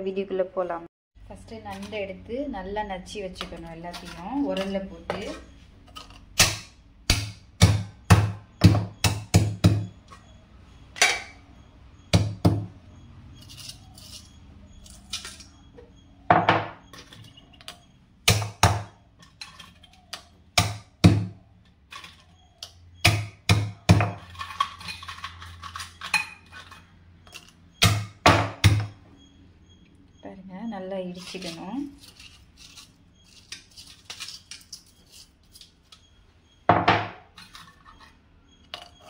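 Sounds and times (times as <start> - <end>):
pestle pounding in stone mortar: 6.4 - 9.9, 12.1 - 12.7, 18.3 - 18.9, 20.6 - 21.4, 23.0 - 24.2.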